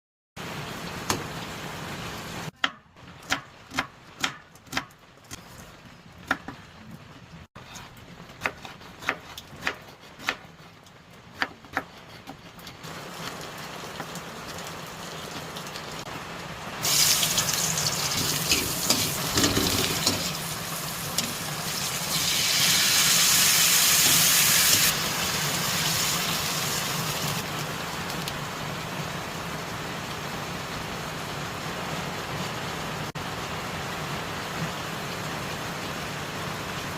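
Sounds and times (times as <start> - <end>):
food sizzling in hot oil: 16.8 - 27.6.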